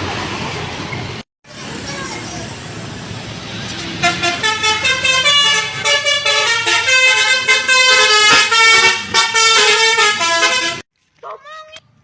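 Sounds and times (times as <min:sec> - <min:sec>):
bus horn playing melody: 0:04.0 - 0:10.8.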